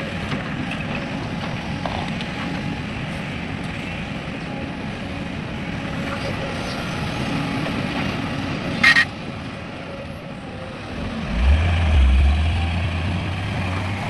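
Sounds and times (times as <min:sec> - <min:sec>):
heavy diesel engine running: 0:10.4 - 0:14.0.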